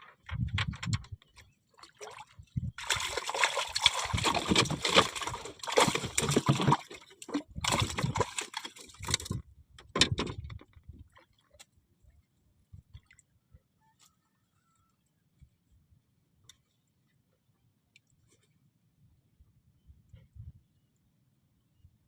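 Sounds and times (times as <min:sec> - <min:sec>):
water sloshing and splashing: 0:00.1 - 0:11.8.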